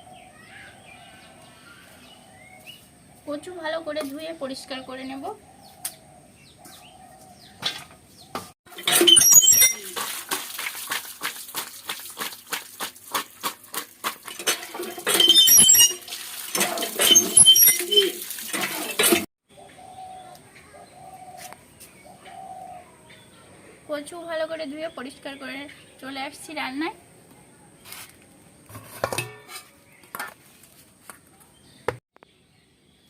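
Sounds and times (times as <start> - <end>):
splashing and sloshing water in bowl: 8.7 - 19.3.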